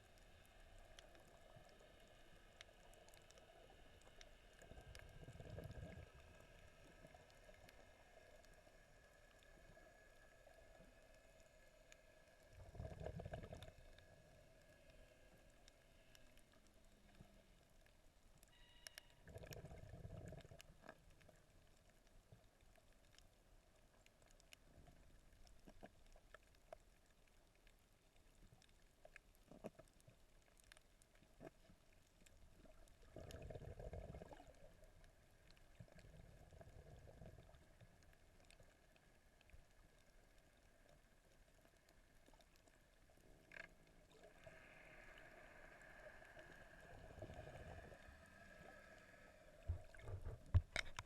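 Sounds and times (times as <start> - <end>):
faint sharp clicks: 0.0 - 5.2, 6.1 - 19.7
muffled underwater water movement: 0.0 - 51.0.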